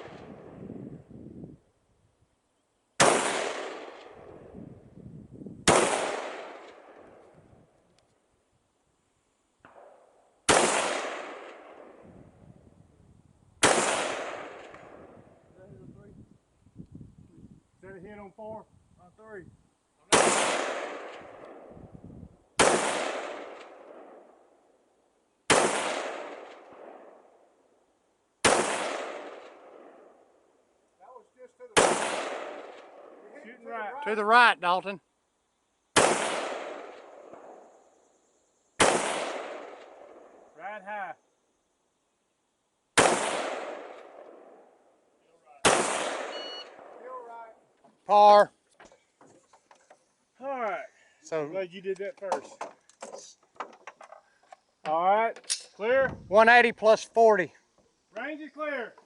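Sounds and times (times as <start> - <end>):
rifle shots with rolling echo: 0.0 - 0.6, 3.0 - 4.8, 5.6 - 7.5, 9.6 - 12.4, 13.6 - 15.5, 20.1 - 21.9, 22.5 - 24.8, 25.4 - 27.8, 28.4 - 30.6, 31.6 - 33.8, 35.9 - 38.0, 38.8 - 40.6, 42.9 - 47.6.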